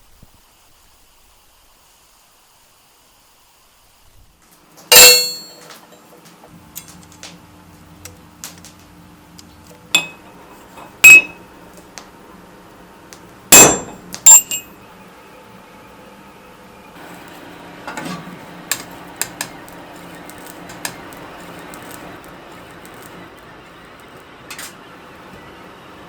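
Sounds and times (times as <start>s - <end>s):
metal tools clanking: 4.9s - 6.0s, 9.9s - 11.4s, 13.5s - 14.8s, 24.0s - 24.8s.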